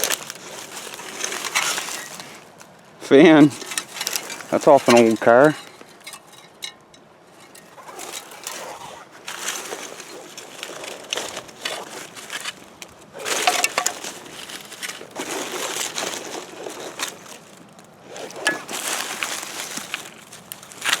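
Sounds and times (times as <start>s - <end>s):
debris crunching and scraping: 0.0s - 21.0s
sharp clinks: 3.6s - 7.7s.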